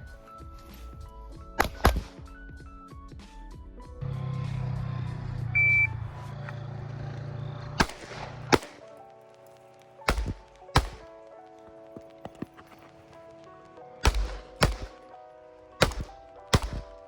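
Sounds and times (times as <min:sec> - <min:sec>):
background music: 0:00.0 - 0:17.0
gunshots: 0:01.6 - 0:02.2, 0:07.8 - 0:09.0, 0:10.0 - 0:11.1, 0:14.0 - 0:15.1, 0:15.8 - 0:17.0
short electronic beep: 0:05.6 - 0:06.0.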